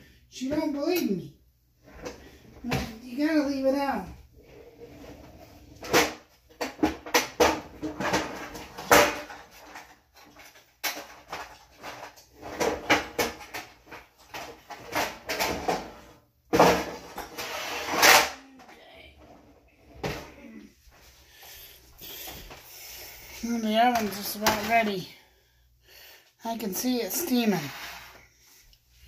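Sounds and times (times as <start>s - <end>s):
pots and pans clattering: 5.8s - 18.4s.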